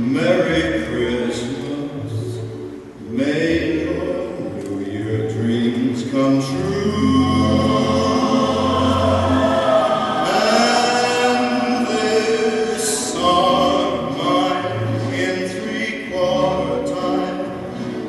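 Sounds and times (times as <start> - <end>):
orchestra: 0.0 - 18.0
slow waltz song with vocals: 0.0 - 18.0
backing choir: 6.5 - 17.5.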